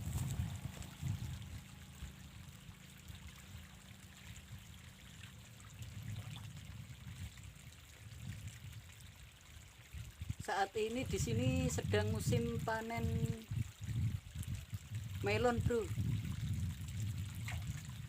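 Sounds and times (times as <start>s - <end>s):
steady low rumble: 0.0s - 8.7s, 15.9s - 18.0s
water trickling and pouring: 0.0s - 18.0s.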